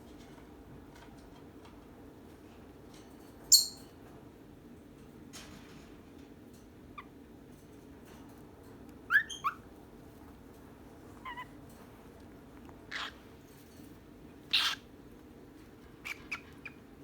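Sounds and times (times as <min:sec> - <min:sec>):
cockatiels chirping: 0:09.1 - 0:09.6, 0:11.2 - 0:11.5, 0:12.9 - 0:13.2, 0:14.5 - 0:14.9, 0:16.0 - 0:16.9.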